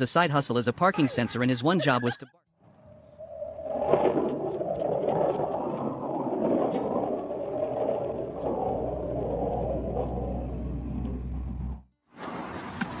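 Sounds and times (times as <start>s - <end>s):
low hum: 2.6s - 11.9s.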